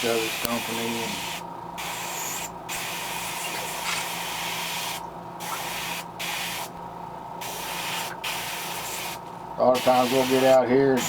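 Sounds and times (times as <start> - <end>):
airbrush spraying hiss: 0.0 - 6.7, 7.4 - 9.2, 9.8 - 11.0.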